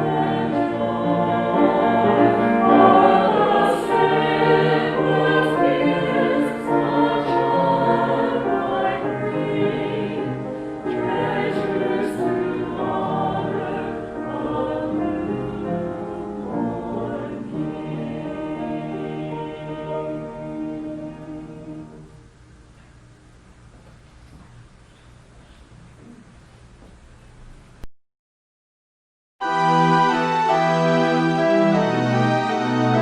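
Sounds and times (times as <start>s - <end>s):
choir singing chords: 0.0s - 22.4s, 29.4s - 33.0s.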